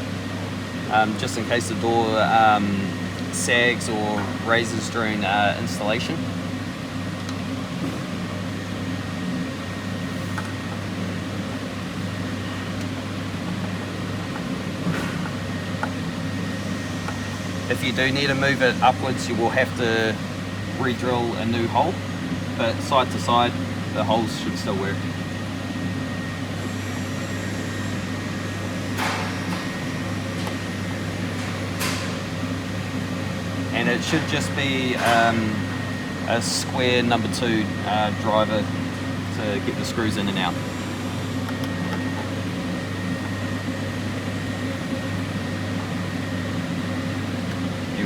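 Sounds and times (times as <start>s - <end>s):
machine humming: 0.0s - 48.0s.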